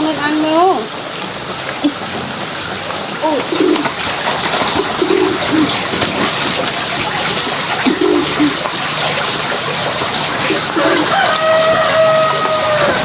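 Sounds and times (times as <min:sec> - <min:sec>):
pigeon cooing: 0:03.2 - 0:09.3, 0:10.3 - 0:13.0.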